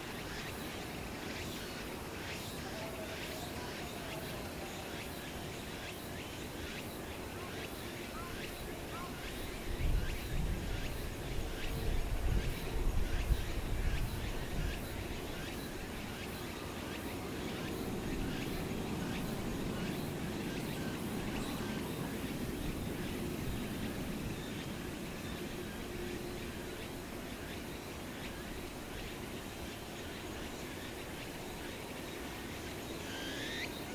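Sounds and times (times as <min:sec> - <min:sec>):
wind buffeting microphone: 0:09.4 - 0:27.3.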